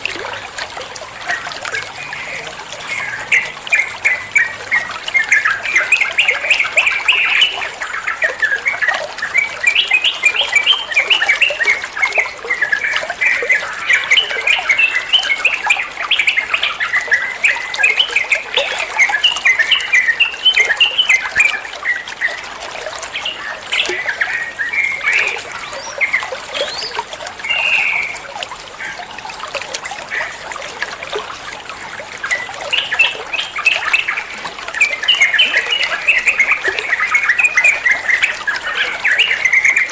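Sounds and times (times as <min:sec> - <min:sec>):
water trickling: 0:00.0 - 0:39.9
bird singing chirps: 0:23.1 - 0:28.2.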